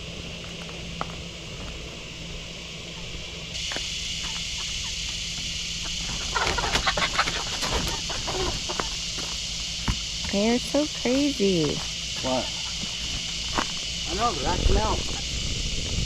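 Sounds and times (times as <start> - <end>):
cicadas droning: 0.0 - 16.0
chickens clucking: 4.2 - 9.7, 12.4 - 13.3.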